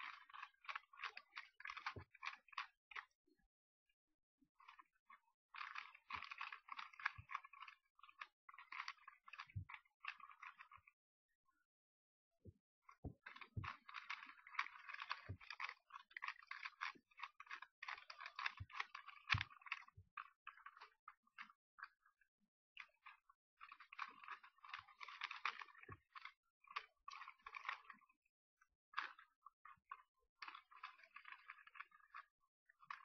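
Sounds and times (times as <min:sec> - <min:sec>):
plastic puzzle cube clicking: 0:00.0 - 0:03.1, 0:05.6 - 0:10.7, 0:13.2 - 0:20.0, 0:23.6 - 0:27.9, 0:30.4 - 0:32.2.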